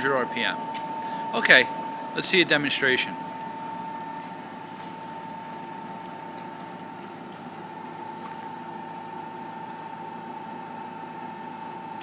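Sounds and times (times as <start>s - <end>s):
high mechanical whine: 0.0s - 12.0s
milling machine spindle hum: 0.0s - 12.0s.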